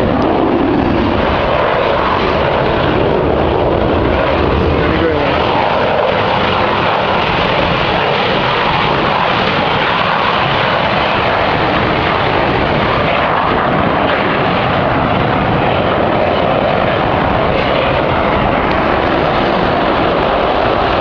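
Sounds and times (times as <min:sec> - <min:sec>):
aircraft engines roaring: 0:00.0 - 0:21.0.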